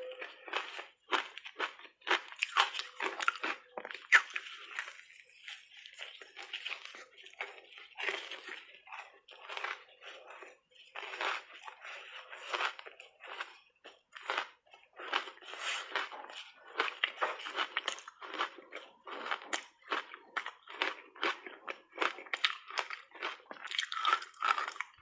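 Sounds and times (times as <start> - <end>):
ice crunching in mouth: 0.0 - 25.0.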